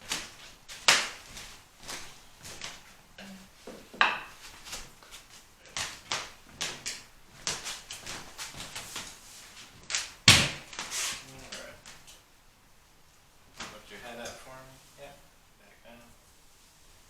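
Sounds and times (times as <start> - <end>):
rustling on padded table: 0.0 - 12.1
sharp loud knock: 10.3 - 10.7.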